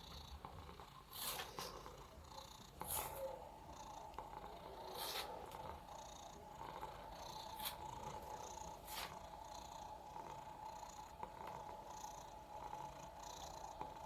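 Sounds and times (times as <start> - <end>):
cat purring: 0.0 - 14.0.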